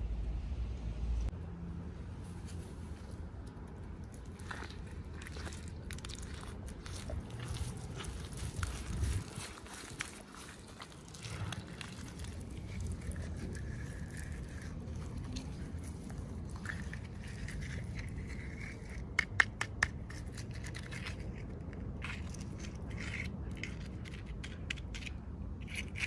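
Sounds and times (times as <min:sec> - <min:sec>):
packaging scraping and crinkling: 0:04.2 - 0:19.0.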